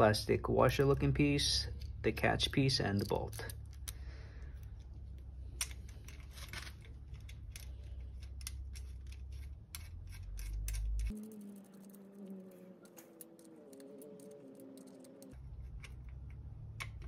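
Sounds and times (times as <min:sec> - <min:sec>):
low hum: 0:00.0 - 0:17.0
metallic clicks of bolts: 0:07.1 - 0:11.4.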